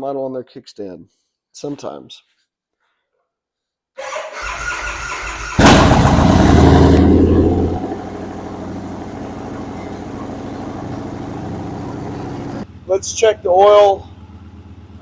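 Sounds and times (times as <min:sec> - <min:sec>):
electric starter cranking: 0:04.4 - 0:07.8
motorcycle engine idling: 0:05.6 - 0:15.0.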